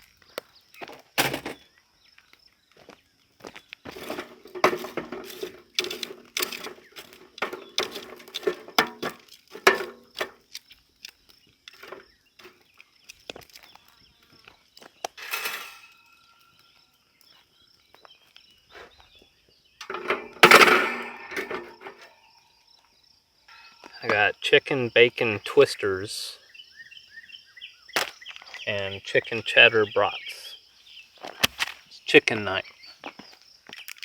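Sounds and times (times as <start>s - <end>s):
small objects clicking and clattering: 3.8s - 16.5s, 33.7s - 34.0s.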